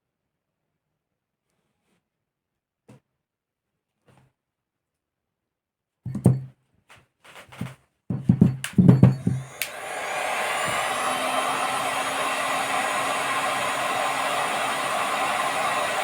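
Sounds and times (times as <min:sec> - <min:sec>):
blower motor whining: 0:09.2 - 0:16.0.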